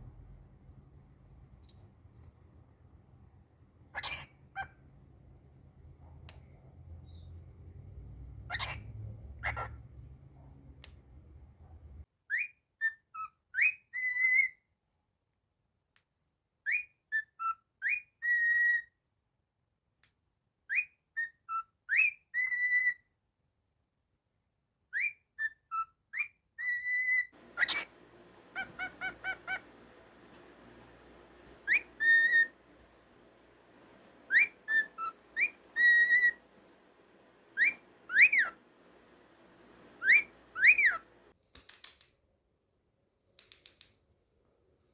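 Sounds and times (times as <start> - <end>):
faint background noise: 0.0 - 12.6, 21.9 - 44.9
cockatiel whistling a tune: 12.3 - 14.6, 16.7 - 18.9, 20.7 - 23.0, 24.9 - 27.9, 28.5 - 29.6, 31.6 - 32.6, 34.3 - 36.4, 37.5 - 38.6, 40.0 - 41.1.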